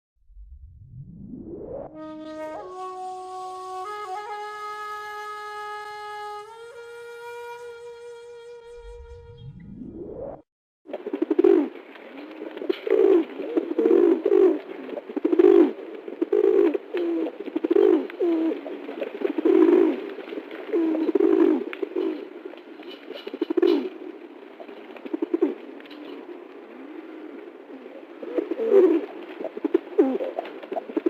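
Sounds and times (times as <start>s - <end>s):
short rising sweep: 0.2s - 2.7s, 8.3s - 10.5s
pigeon cooing: 11.0s - 20.0s, 20.7s - 22.3s, 23.0s - 24.0s, 24.6s - 31.0s.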